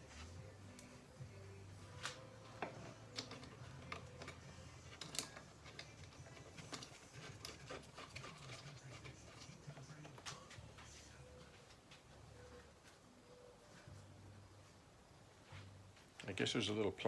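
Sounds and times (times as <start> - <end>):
low steady hum: 0.0 - 17.0
hand tools clicking and tapping: 2.0 - 10.6.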